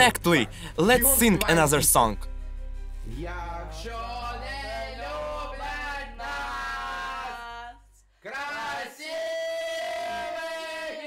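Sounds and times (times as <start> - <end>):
young voices singing together: 3.2 - 11.0.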